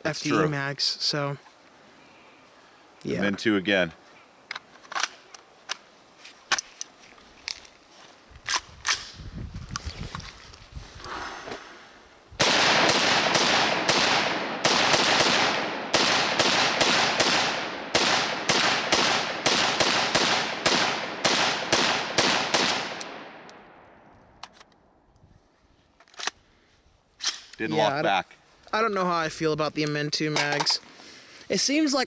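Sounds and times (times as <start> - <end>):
pistol shots with echo: 12.4 - 23.5.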